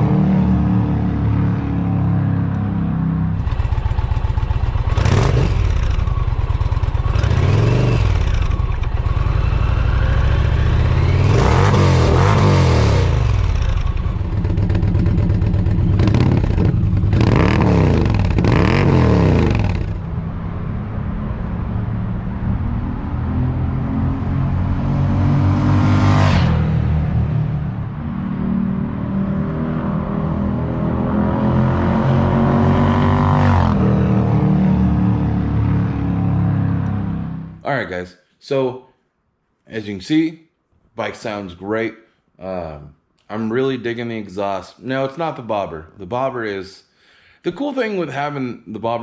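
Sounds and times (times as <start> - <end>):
motorcycle engine revving: 3.2 - 20.3, 24.4 - 37.6.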